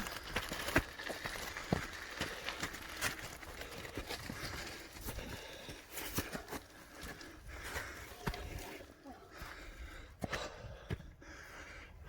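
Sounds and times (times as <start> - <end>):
footsteps on rough trail: 0.0 - 12.0.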